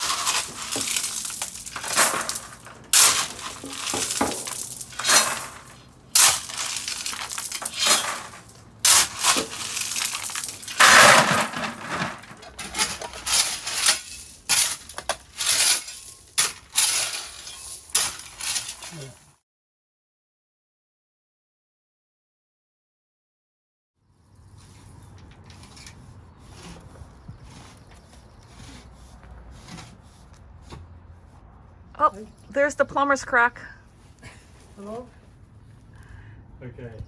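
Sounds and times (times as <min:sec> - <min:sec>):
shovel scraping gravel: 0:00.0 - 0:19.3.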